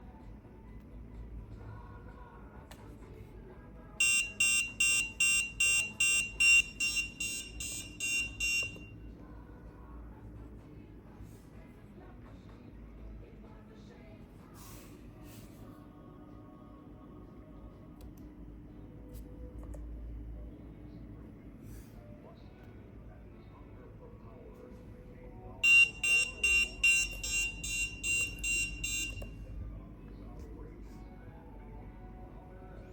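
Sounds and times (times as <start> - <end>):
alarm buzzer beeping: 4.0 - 9.0, 25.6 - 29.4.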